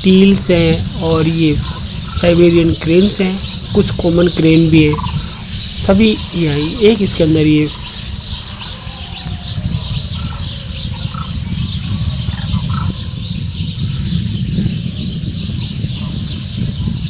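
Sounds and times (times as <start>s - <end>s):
steady low rumble: 0.0s - 8.7s
bird squawks: 0.0s - 11.5s
wetland birds calling: 0.0s - 17.0s.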